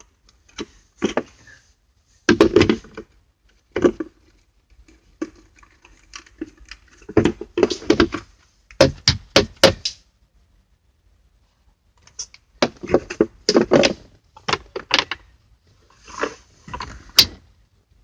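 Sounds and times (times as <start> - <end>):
plastic filter tray knocking and clicking: 2.3 - 3.1.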